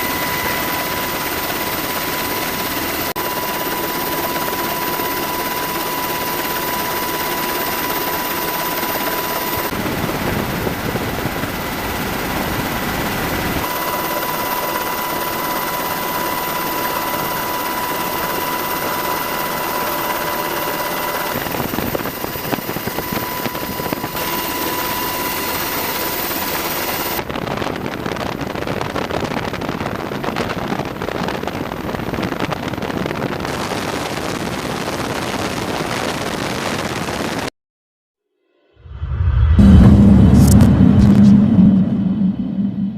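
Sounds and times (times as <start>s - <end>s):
high steady whine: 0.0s - 29.8s, 38.6s - 42.9s
helicopter engine and rotor noise: 0.0s - 36.9s.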